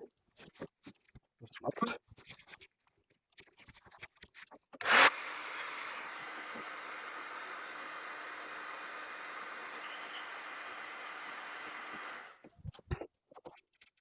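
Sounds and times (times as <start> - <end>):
hot-air gun hissing: 4.8 - 12.4.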